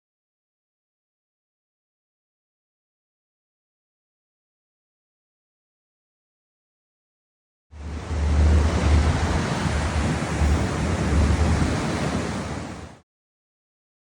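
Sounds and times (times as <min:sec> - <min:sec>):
wind buffeting microphone: 0:07.8 - 0:13.0.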